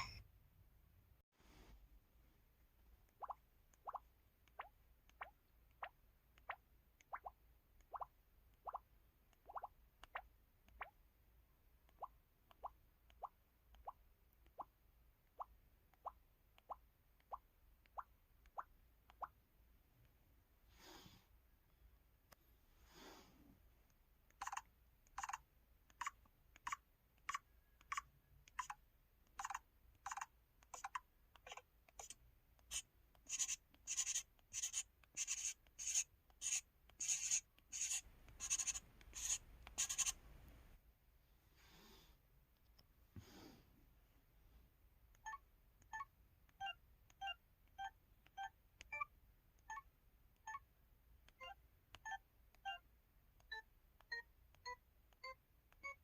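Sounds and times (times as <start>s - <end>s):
phone keypad pencil-scratch tones: 0.0s - 0.2s, 24.3s - 40.2s, 53.4s - 56.0s.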